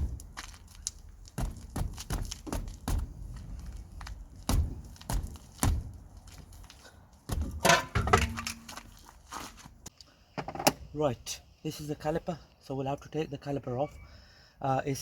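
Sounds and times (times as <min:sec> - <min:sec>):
metal tools clunking: 0:07.4 - 0:08.9.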